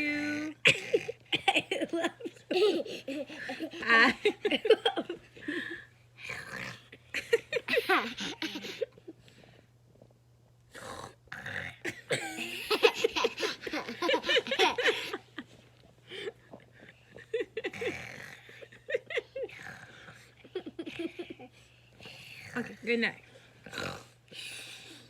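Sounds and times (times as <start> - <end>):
baby grunting and giggling: 7.6 - 8.9.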